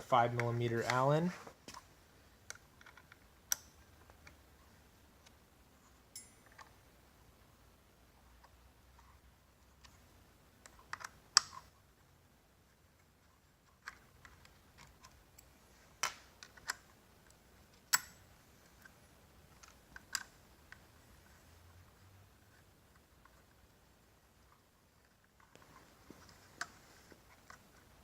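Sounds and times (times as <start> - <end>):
allen key clicking on metal bolts: 17.9 - 18.2.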